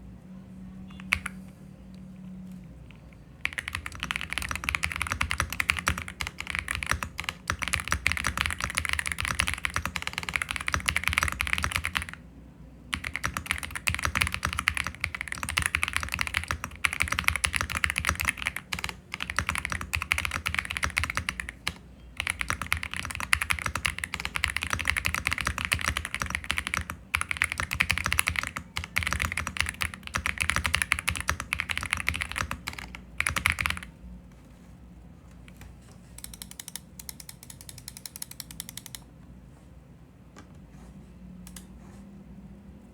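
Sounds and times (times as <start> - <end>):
fast typing on keyboard: 1.1 - 1.4, 3.4 - 12.2, 12.9 - 33.9.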